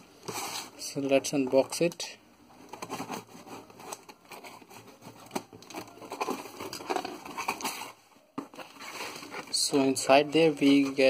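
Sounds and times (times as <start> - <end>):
packaging crinkling and rustling: 2.6 - 11.0.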